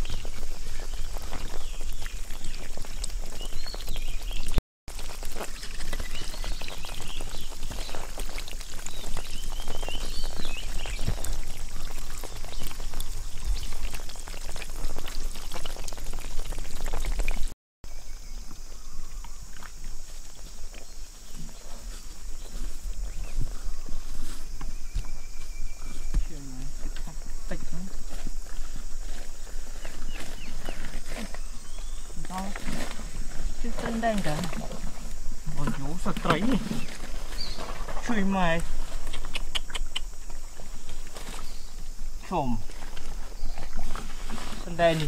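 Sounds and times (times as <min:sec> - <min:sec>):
water and mud splashing: 0:00.0 - 0:17.6, 0:19.0 - 0:45.0.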